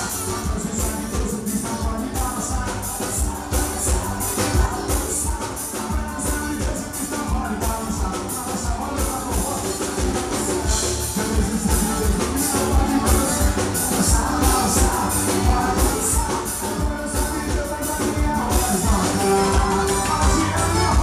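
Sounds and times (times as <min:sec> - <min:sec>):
forro music with drum beat: 0:00.0 - 0:21.0.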